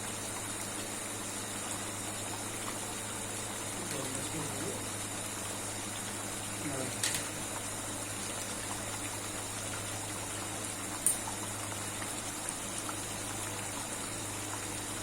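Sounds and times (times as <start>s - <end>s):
gravy simmering in a pan: 0.0s - 15.0s
small click: 11.0s - 11.2s.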